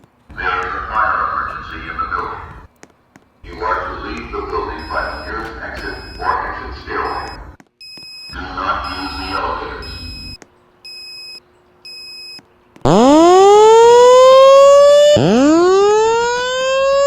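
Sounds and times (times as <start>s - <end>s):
person speaking announcement: 0.3s - 2.7s, 3.4s - 7.5s, 8.3s - 10.2s
whoop evacuation tone: 12.9s - 17.0s.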